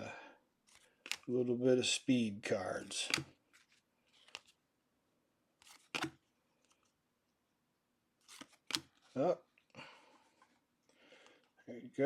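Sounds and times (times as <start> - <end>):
card swish: 3.0 - 3.3, 5.6 - 6.2.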